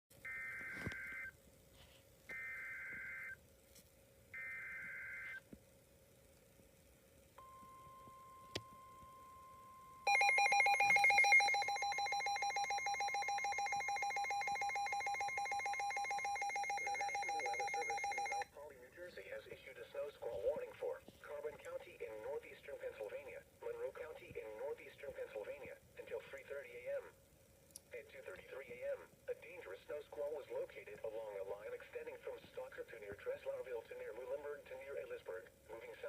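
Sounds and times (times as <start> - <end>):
data tone bursts: 7.4 - 18.5
two-tone attention signal: 7.4 - 18.5.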